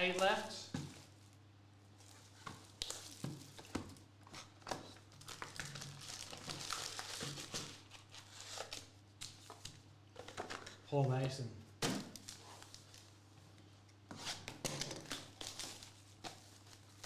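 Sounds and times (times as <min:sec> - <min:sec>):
plastic wrapping tearing and crinkling: 0:02.0 - 0:10.6, 0:11.9 - 0:13.2, 0:14.2 - 0:17.0.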